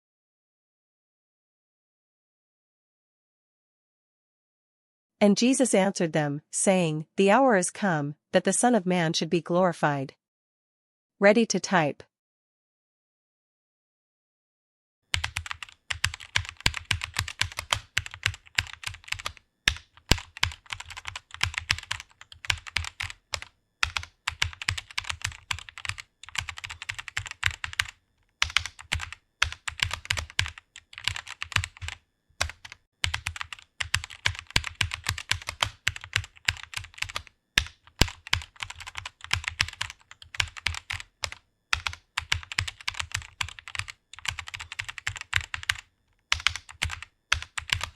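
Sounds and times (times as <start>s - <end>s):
keyboard typing clicks: 15.2s - 47.9s.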